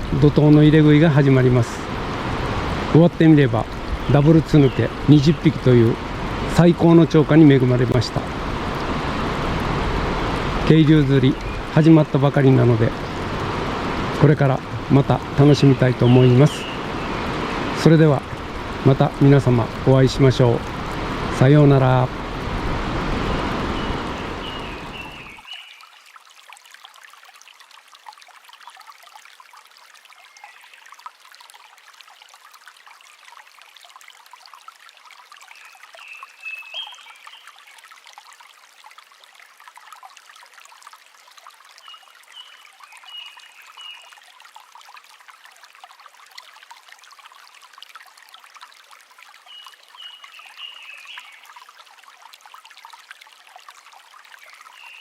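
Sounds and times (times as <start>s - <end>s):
stream water flowing: 0.0s - 55.0s
chirping bird calls: 15.4s - 17.4s, 23.6s - 25.7s.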